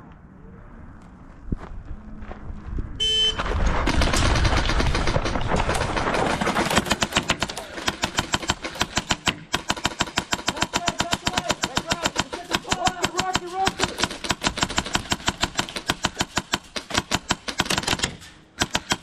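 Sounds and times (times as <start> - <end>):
movement noise: 0.0 - 4.0
electronic beep: 3.0 - 3.4
airsoft guns firing: 3.4 - 19.0.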